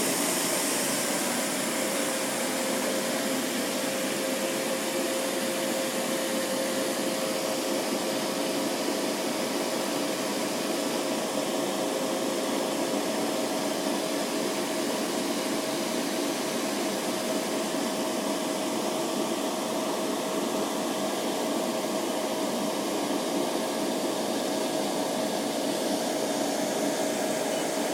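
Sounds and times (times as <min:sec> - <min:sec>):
recovery machine humming: 0:00.0 - 0:14.0, 0:22.5 - 0:27.9.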